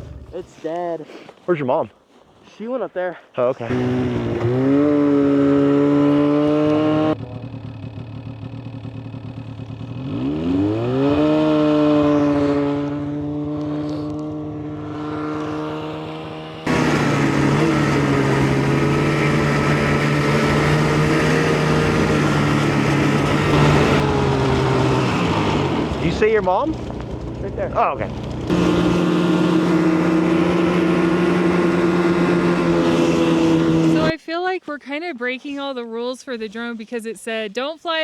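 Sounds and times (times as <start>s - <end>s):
snowmobile engine revving: 0.0s - 0.8s, 3.4s - 34.2s.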